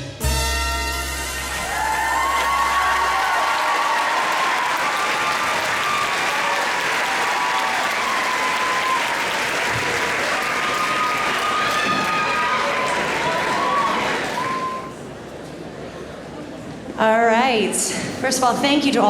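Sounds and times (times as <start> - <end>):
music bass: 0.0 - 2.0
crowd cheering and whooping: 1.5 - 15.0
crowd clapping: 1.7 - 15.1.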